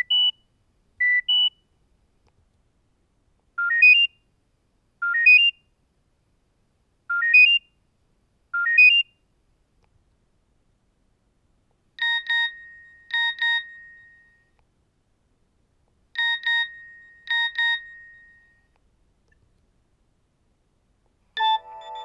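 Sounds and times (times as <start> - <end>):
phone message alert beeps: 21.4 - 22.0.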